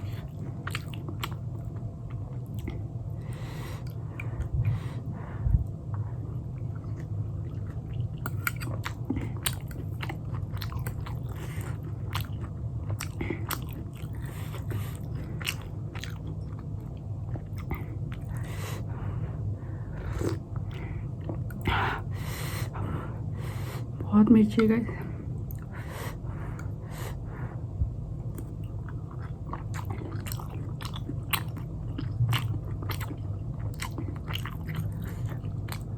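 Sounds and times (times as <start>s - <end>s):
steady low hum: 0.0s - 35.9s
close biting and chewing: 29.5s - 35.9s.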